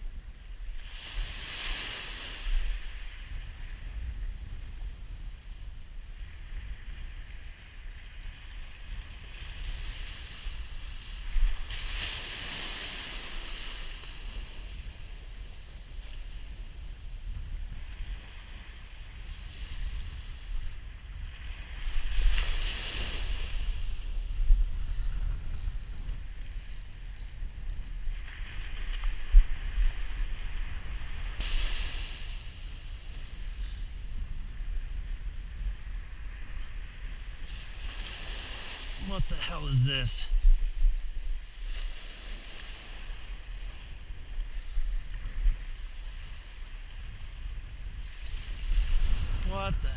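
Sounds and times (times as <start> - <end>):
wind rumble on microphone: 0.0 - 49.9
surf washing up the beach: 0.8 - 4.2, 6.2 - 25.5, 27.4 - 40.6, 41.8 - 49.9
spinning reel ticking: 24.2 - 28.1, 31.6 - 34.7, 40.6 - 42.5.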